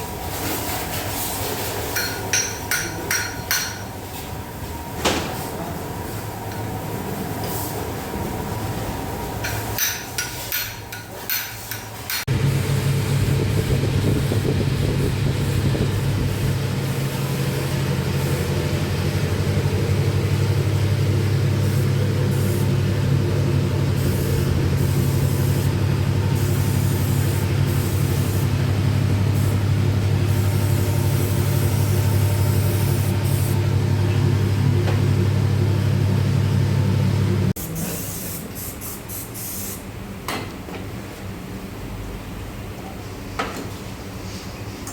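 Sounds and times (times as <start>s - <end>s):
motor hum: 12.3s - 37.5s.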